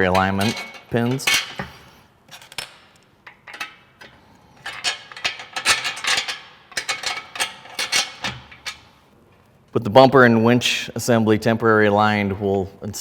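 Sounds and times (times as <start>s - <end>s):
metal bolts clinking: 0.0s - 8.9s.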